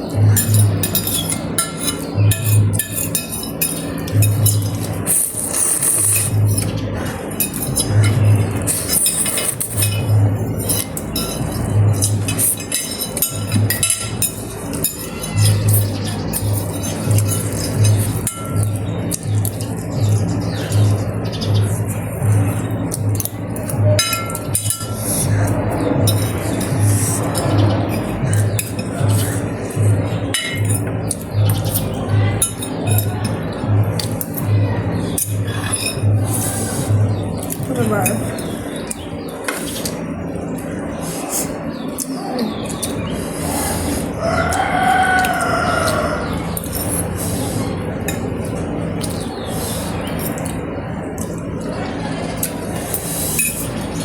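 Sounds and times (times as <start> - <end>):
background music with bass: 0.0 - 42.0
cutlery clinking against a bowl: 0.0 - 54.0.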